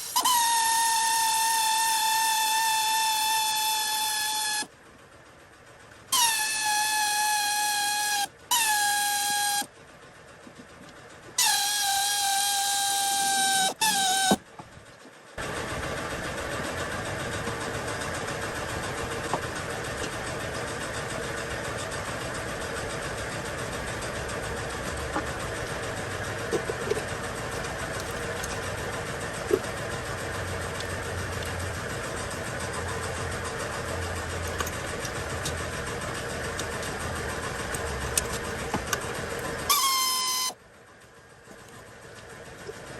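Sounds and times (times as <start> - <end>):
car engine idling: 15.4 - 39.7.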